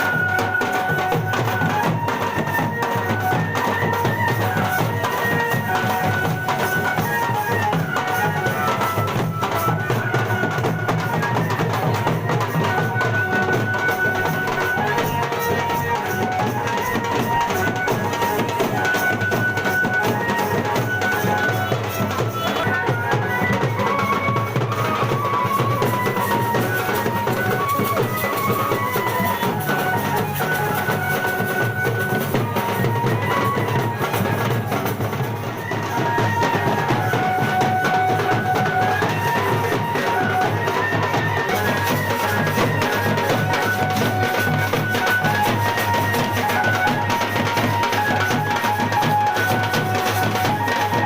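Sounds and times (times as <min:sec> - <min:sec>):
music with dense drumming: 0:00.0 - 0:51.0.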